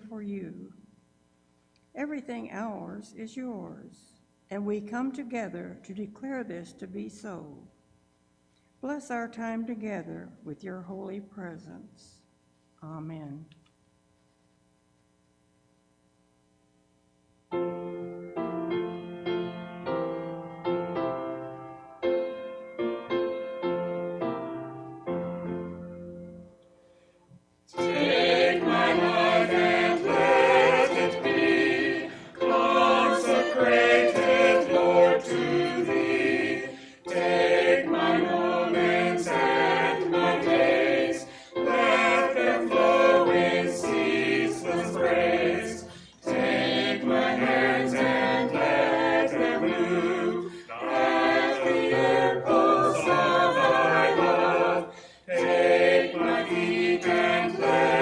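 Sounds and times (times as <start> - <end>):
piano notes: 17.5 - 26.6
choir singing: 27.7 - 58.0.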